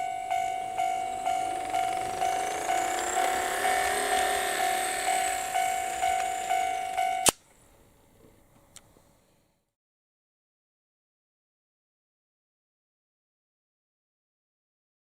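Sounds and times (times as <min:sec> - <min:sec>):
electronic warning bell ringing: 0:00.0 - 0:07.3
model train motor whine: 0:00.0 - 0:07.9
click: 0:05.1 - 0:07.4.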